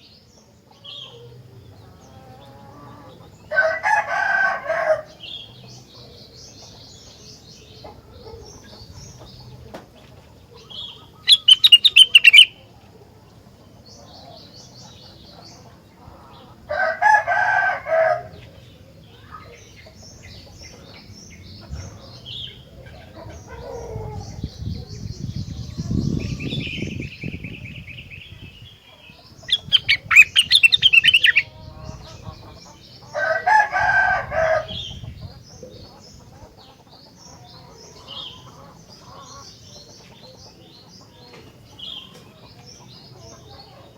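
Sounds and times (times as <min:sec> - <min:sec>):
lower bird call: 0:10.7 - 0:12.6, 0:29.4 - 0:32.4
bird chirping and chattering: 0:10.8 - 0:12.6, 0:29.4 - 0:33.0.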